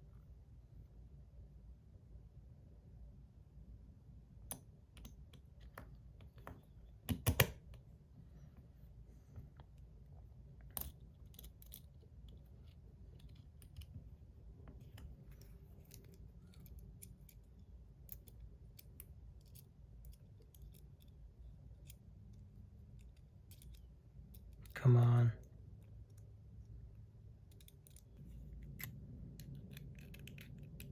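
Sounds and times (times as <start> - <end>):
small metal clicks and taps: 27.5 - 28.1.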